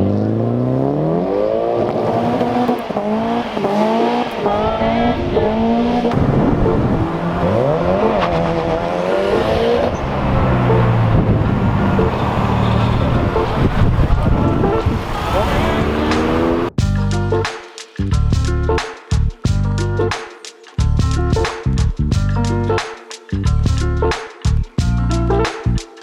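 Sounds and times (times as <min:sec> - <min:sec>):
car engine revving: 0:00.0 - 0:16.8.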